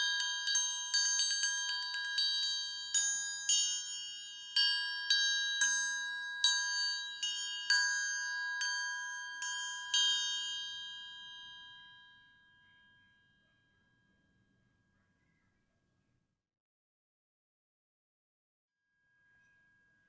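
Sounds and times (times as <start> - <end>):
metal triangle ringing: 0.0 - 12.9.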